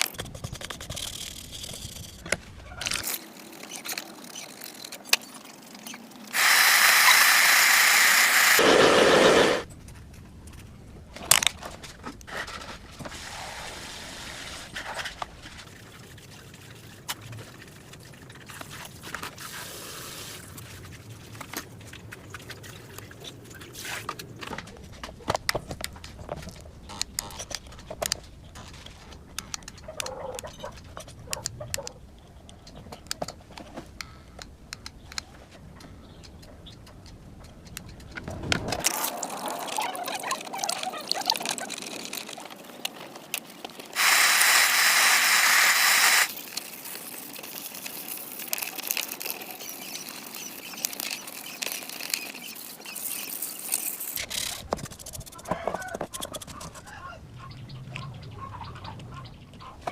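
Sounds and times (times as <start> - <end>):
faint hiss: 13.0 - 14.8, 44.0 - 48.5.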